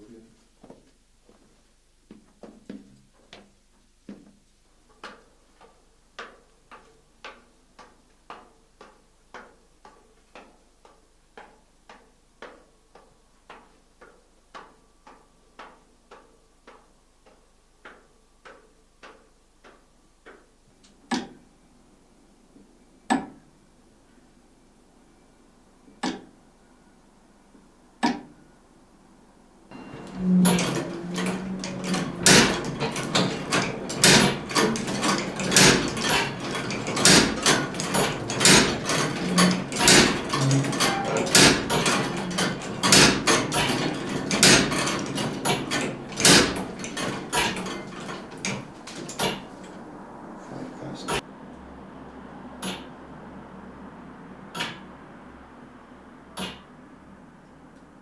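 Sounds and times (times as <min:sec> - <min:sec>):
clock ticking: 0:30.0 - 0:49.5
dense clatter of mechanical knocks: 0:30.0 - 0:49.9.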